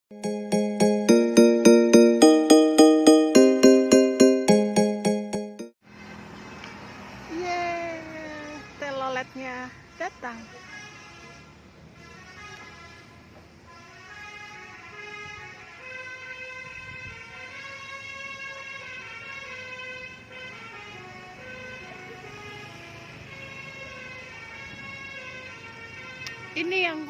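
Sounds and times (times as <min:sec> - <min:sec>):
musical bus air horn: 0:09.8 - 0:27.0.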